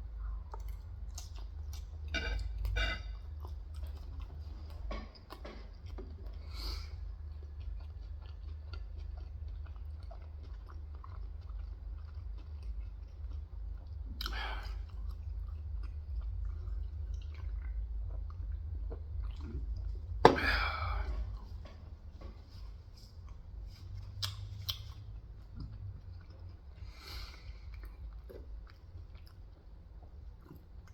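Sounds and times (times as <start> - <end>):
chewing crunchy fried chicken: 0.0 - 30.9
low hum: 0.0 - 30.9.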